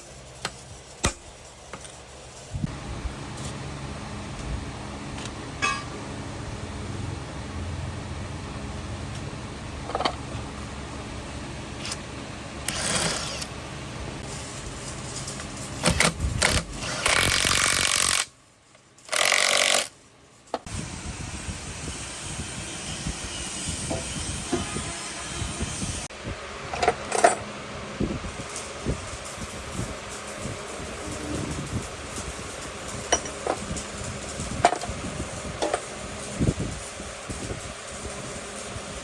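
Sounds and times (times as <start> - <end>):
metal clanks and knocks: 5.6 - 6.0.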